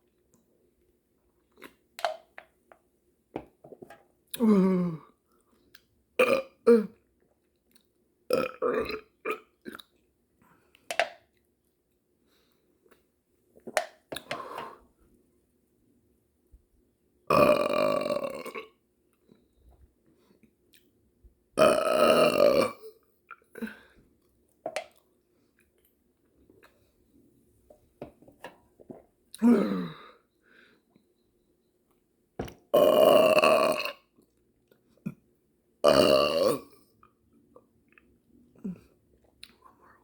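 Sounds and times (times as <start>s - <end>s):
person burping: 4.4s - 5.1s, 6.2s - 7.0s, 8.3s - 9.5s, 17.3s - 18.8s, 21.6s - 23.9s, 29.4s - 30.2s, 32.7s - 34.1s, 35.8s - 36.8s.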